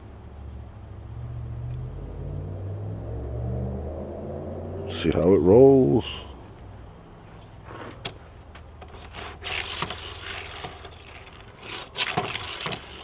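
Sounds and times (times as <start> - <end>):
toy car wheels rolling: 7.6 - 13.0.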